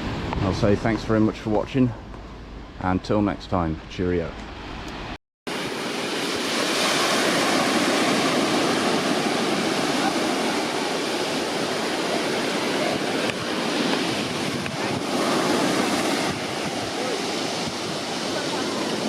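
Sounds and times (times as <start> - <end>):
water rushing: 5.0 - 19.0.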